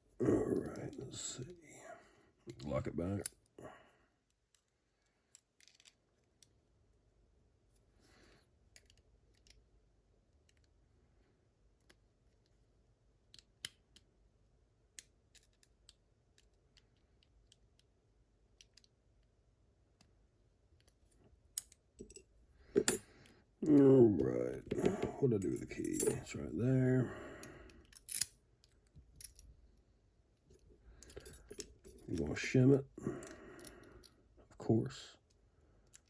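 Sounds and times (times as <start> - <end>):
metallic clicks of lock parts: 5.3 - 6.5, 8.7 - 9.6, 15.0 - 17.9, 20.8 - 23.1, 27.8 - 29.5.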